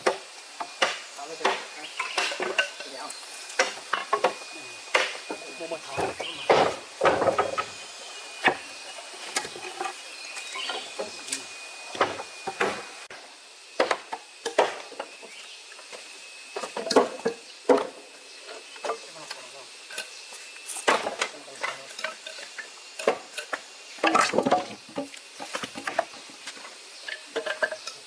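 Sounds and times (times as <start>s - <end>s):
knocks and clatters of handwork: 5.9s - 7.8s.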